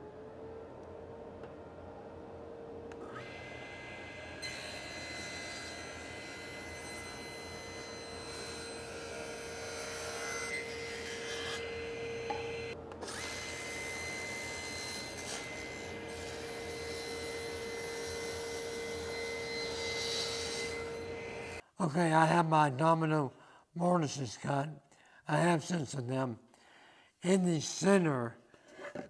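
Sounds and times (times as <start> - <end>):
power tool motor whine: 2.9 - 5.0, 5.8 - 9.3, 11.8 - 19.8.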